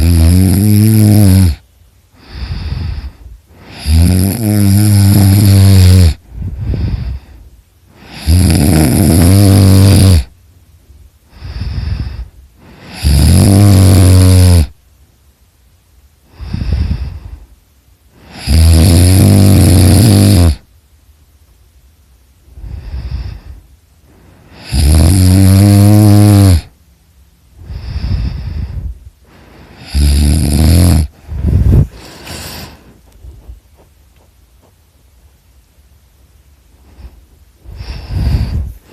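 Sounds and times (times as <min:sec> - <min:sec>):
person snoring: 0:00.0 - 0:01.6, 0:02.2 - 0:10.4, 0:11.3 - 0:14.8, 0:16.3 - 0:17.5, 0:18.2 - 0:20.7, 0:22.6 - 0:26.8, 0:27.6 - 0:32.9, 0:36.9 - 0:38.9
soft breath sounds: 0:01.5 - 0:04.1, 0:04.8 - 0:08.4, 0:11.2 - 0:13.3, 0:16.2 - 0:18.6, 0:22.4 - 0:24.9, 0:27.5 - 0:30.2, 0:31.0 - 0:33.9, 0:36.6 - 0:38.9
short snorts: 0:27.6 - 0:33.2, 0:36.8 - 0:38.9.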